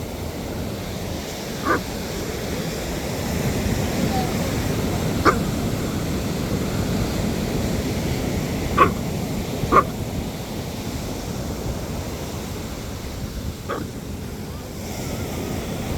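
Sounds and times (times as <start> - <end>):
surf washing: 0.0 - 15.9
dog barking: 1.5 - 2.0, 5.1 - 5.6, 8.6 - 10.0, 13.7 - 14.0.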